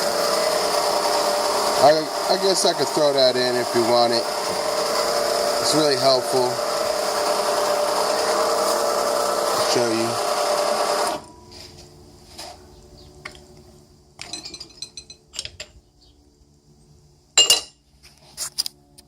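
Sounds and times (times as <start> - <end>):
motor running: 0.0 - 11.4
glass pieces clinking: 14.2 - 15.5.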